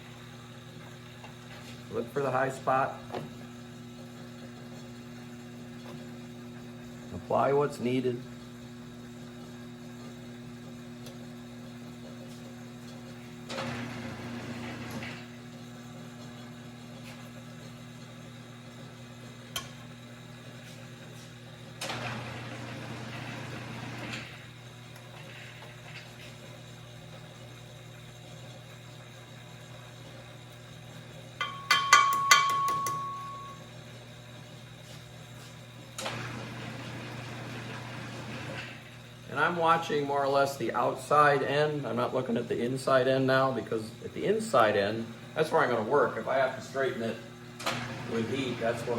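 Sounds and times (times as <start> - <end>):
sharp ringing taps: 31.4 - 33.6
lathe humming: 35.4 - 48.9.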